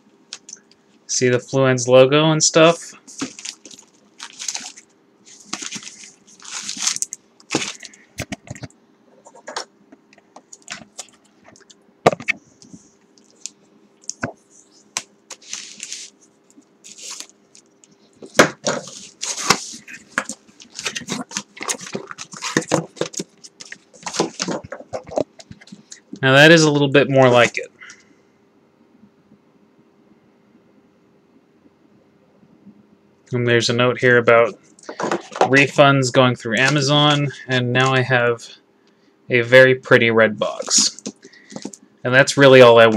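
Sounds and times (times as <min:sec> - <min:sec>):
faint steady hum: 0:00.0 - 0:42.9
cardboard packaging being torn: 0:03.2 - 0:04.8, 0:05.4 - 0:07.9.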